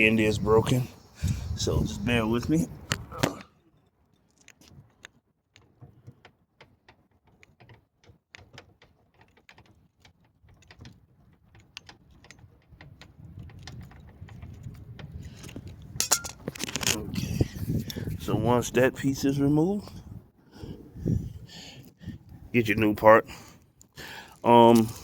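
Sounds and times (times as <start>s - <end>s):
hand tools clicking and rattling: 8.4s - 17.0s.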